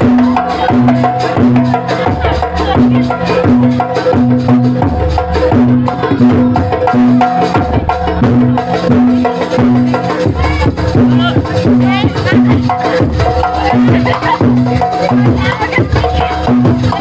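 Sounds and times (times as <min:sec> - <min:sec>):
gongs and metallophones: 0:00.0 - 0:17.0
hand drums: 0:00.0 - 0:17.0.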